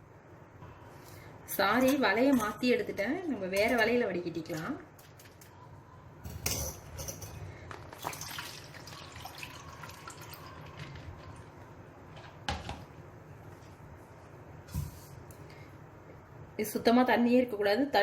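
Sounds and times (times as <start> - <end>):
water draining and dripping: 7.7 - 11.5.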